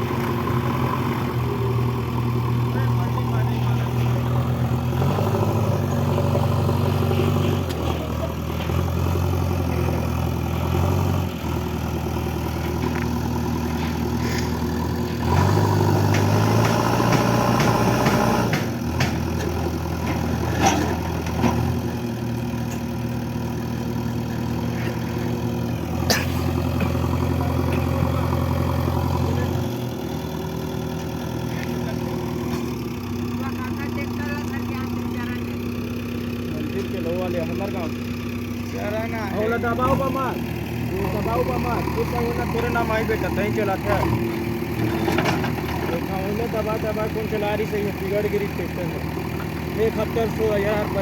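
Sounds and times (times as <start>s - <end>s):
heavy machinery diesel engine: 0.0s - 51.0s
sharp knocks: 15.3s - 20.9s.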